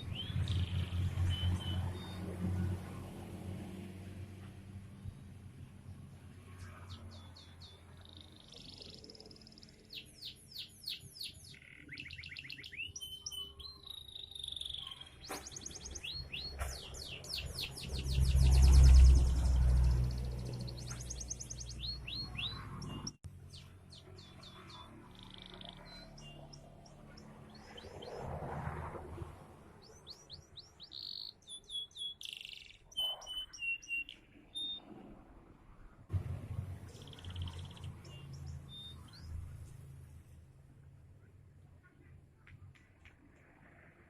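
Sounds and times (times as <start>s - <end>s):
canary singing: 6.9s - 27.8s, 29.9s - 34.8s, 36.9s - 39.4s.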